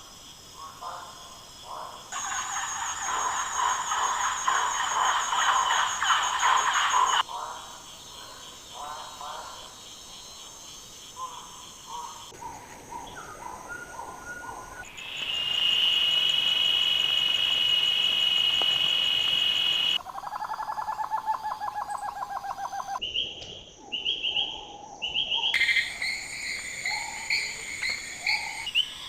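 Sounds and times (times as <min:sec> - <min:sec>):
insect buzz: 0:14.8 - 0:23.8, 0:25.6 - 0:29.0.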